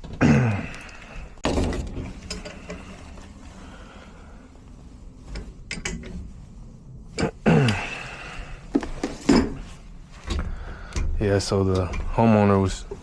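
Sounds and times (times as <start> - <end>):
person grunting: 0.2 - 1.0, 7.4 - 8.2.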